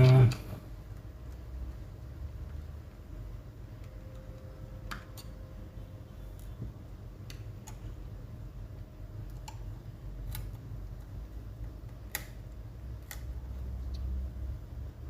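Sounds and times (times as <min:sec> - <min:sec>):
low hum: 0:00.0 - 0:15.0
small clicks and taps: 0:09.2 - 0:14.2.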